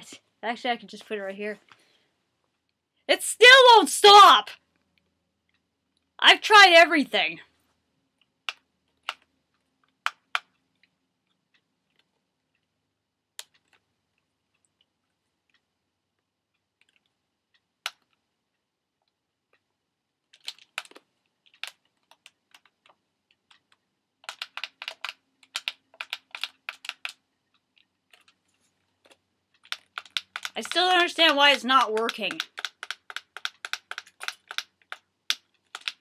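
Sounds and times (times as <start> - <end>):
toy alarm clock buttons clicking: 29.7 - 36.0.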